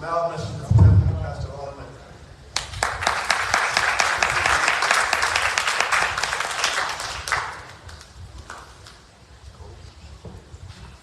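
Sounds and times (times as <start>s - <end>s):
congregation clapping: 2.5s - 9.0s.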